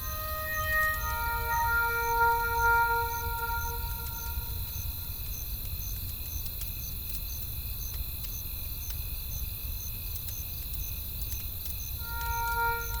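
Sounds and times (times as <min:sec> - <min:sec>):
low rush of wind: 0:00.0 - 0:06.1
crickets chirping: 0:00.0 - 0:13.0
campfire crackling and popping: 0:05.2 - 0:11.8.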